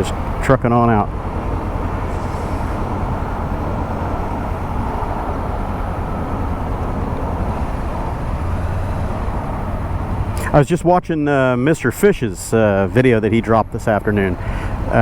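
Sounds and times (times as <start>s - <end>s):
motorcycle engine: 0.0s - 10.6s
motorcycle road noise: 0.0s - 15.0s
wind rushing: 1.0s - 10.3s.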